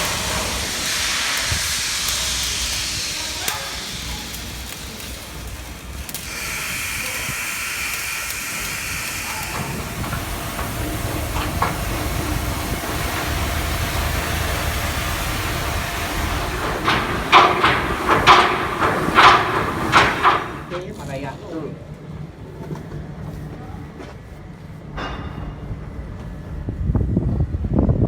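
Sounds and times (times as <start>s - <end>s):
loud steady hiss: 0.0s - 20.8s.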